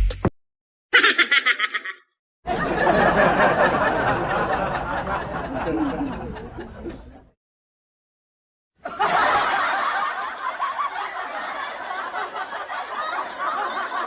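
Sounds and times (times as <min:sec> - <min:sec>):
high-pitched giggle: 0:01.0 - 0:02.0
crowd laughing: 0:01.0 - 0:07.4, 0:08.8 - 0:14.0.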